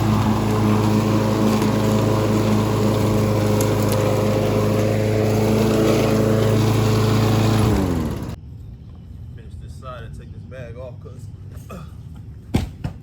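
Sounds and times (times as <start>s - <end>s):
lawn mower engine running: 0.0s - 8.4s.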